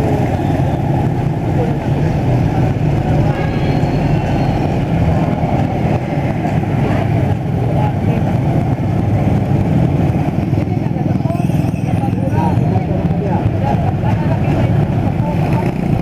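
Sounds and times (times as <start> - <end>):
rumble of street traffic: 0.0 - 16.0.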